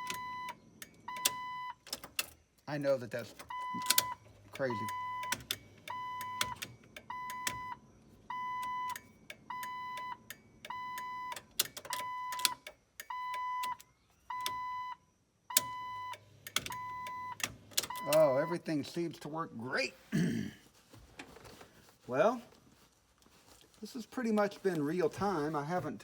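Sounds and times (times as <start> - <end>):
dashboard warning beep: 0.0 - 2.0, 3.4 - 19.0.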